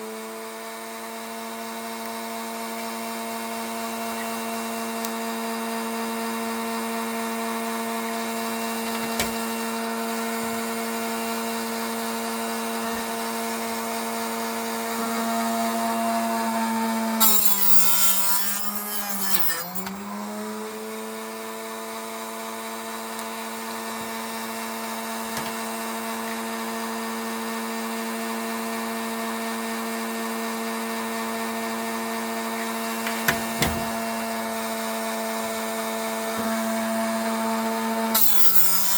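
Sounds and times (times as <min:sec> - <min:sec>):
chop saw whining: 0:14.7 - 0:20.8, 0:38.1 - 0:38.9
saw blade rasping through plastic: 0:17.2 - 0:20.0, 0:38.2 - 0:38.9.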